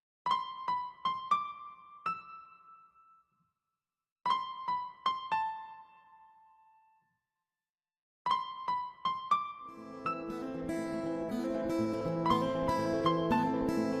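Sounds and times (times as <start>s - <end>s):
soft keyboard melody: 0.3s - 3.3s, 4.2s - 7.1s, 8.3s - 14.0s.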